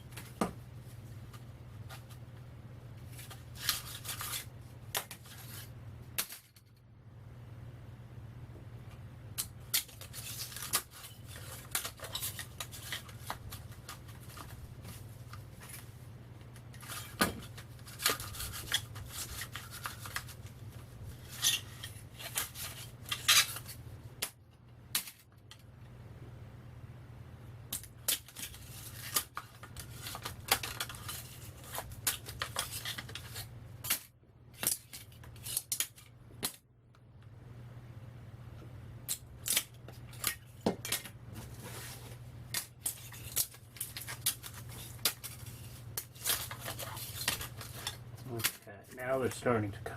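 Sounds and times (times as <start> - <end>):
steady low hum: 0.0 - 49.9
metal sheets clinking and scraping: 21.2 - 23.8.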